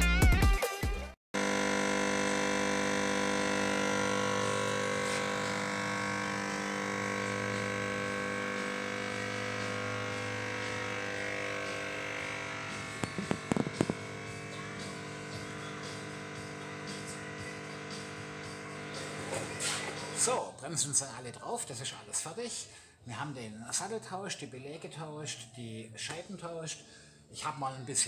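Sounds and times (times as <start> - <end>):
electric buzz: 1.4 - 20.3.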